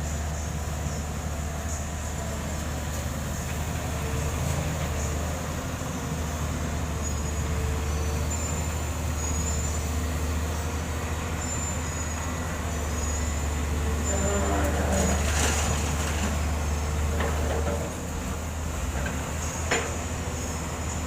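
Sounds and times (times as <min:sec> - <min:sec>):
diesel engine drone: 0:00.0 - 0:21.0.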